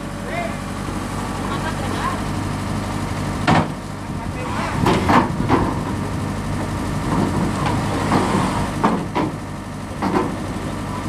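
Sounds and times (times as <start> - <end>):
heavy diesel engine running: 0.0 - 11.0
short knocks: 3.4 - 3.8, 4.6 - 10.6.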